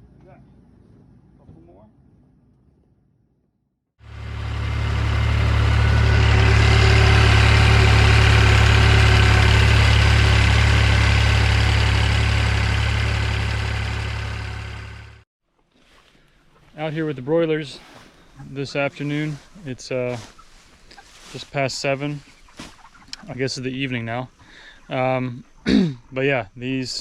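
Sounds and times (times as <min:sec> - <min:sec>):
engine idling: 0:04.0 - 0:15.2.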